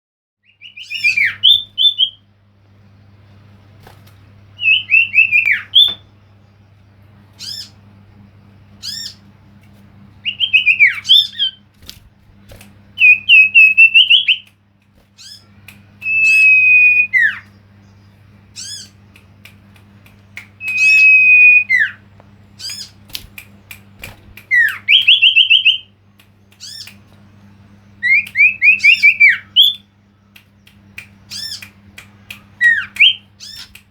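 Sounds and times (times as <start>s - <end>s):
bird singing: 0.4s - 2.3s, 4.6s - 6.7s, 7.4s - 7.8s, 8.8s - 9.3s, 10.2s - 11.7s, 13.0s - 14.4s, 15.2s - 19.1s, 20.6s - 23.0s, 24.5s - 26.0s, 26.6s - 30.4s, 32.5s - 33.8s
steady low hum: 0.5s - 33.9s.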